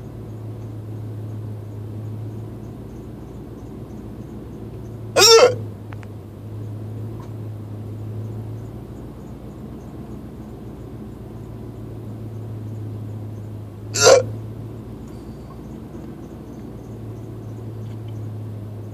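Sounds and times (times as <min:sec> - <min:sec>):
steady low hum: 0:00.0 - 0:18.9
man hiccuping: 0:05.2 - 0:05.6, 0:14.0 - 0:14.3.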